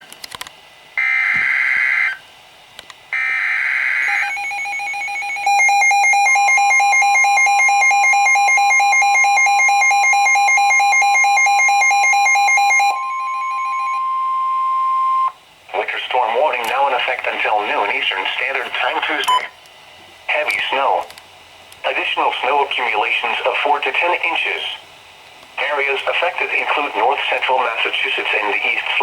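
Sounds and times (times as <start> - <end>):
steady warning alarm tone: 1.0 - 2.3, 3.1 - 19.5
fast-pulsing electronic alert beep: 4.0 - 15.3.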